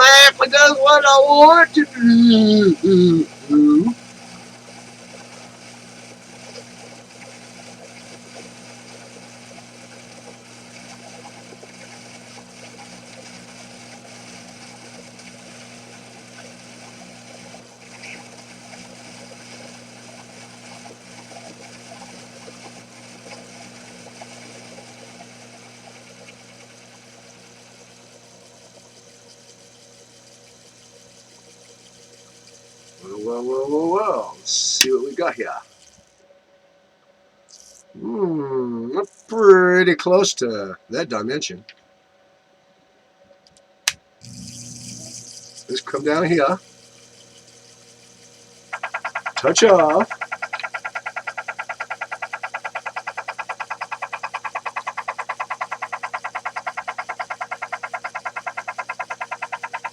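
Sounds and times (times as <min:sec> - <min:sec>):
metal lathe motor hum: 0:44.2 - 0:59.9.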